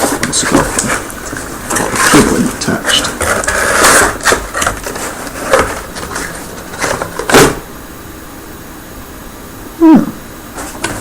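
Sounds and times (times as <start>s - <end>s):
box packaging rustling: 0.0s - 7.7s, 10.6s - 11.0s.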